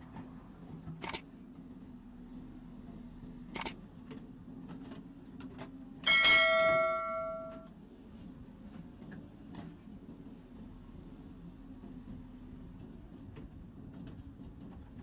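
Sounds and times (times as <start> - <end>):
low steady hum: 6.1 - 7.6
metallic clang ringing: 6.1 - 7.7.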